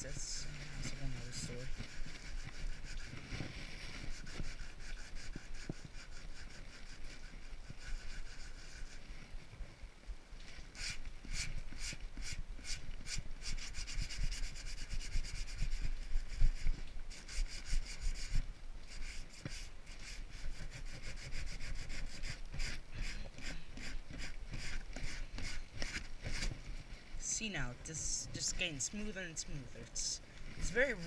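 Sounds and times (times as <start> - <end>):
sandpaper rubbing on wood: 0.2 - 9.1, 10.8 - 26.5.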